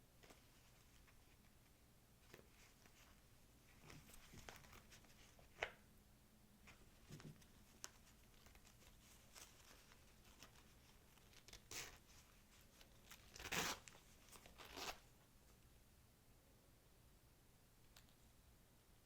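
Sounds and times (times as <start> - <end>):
paper wrapping rustling and crinkling: 7.0 - 15.0.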